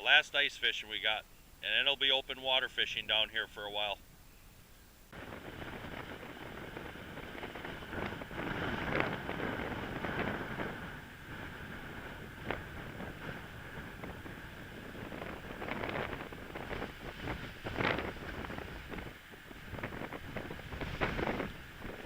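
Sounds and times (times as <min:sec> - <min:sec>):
wind: 0:00.0 - 0:22.0
water lapping on shore: 0:05.1 - 0:22.0.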